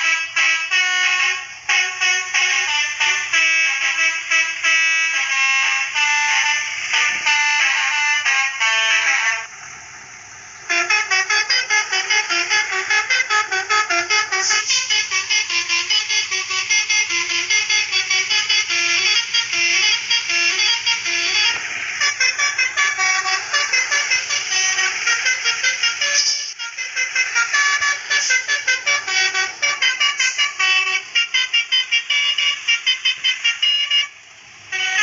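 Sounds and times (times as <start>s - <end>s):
multi-tone bus horn melody: 0.0s - 9.6s, 10.5s - 35.0s.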